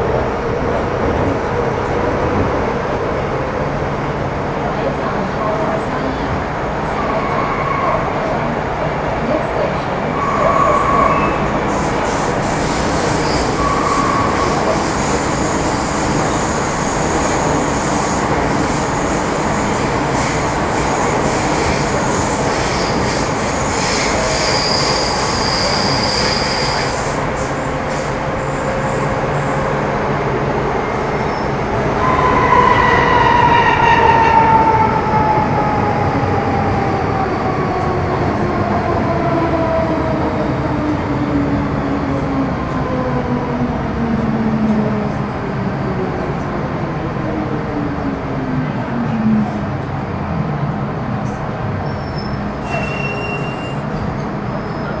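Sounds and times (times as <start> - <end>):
high wheel squeal: 23.8 - 27.2, 51.8 - 54.0.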